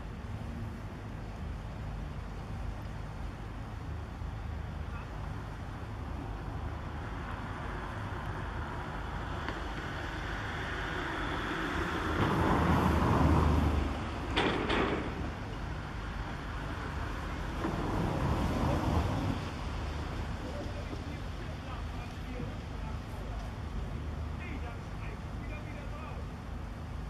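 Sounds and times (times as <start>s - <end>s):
heavy machinery rumbling: 10.7s - 26.7s.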